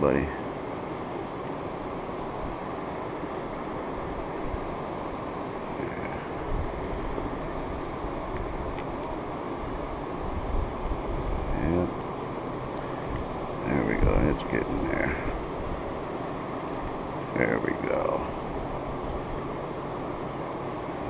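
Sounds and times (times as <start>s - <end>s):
wind buffeting microphone: 2.0s - 11.9s.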